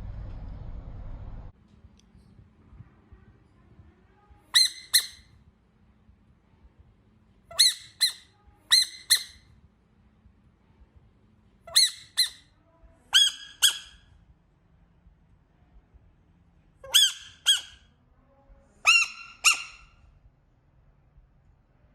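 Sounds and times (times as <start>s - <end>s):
frog squeaking: 7.6s - 9.3s, 13.2s - 14.0s, 16.8s - 17.8s, 18.9s - 19.9s.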